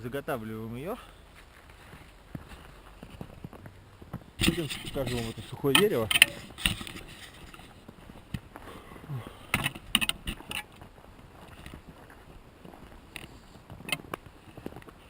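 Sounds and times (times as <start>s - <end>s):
footsteps in wet snow: 1.2s - 8.3s.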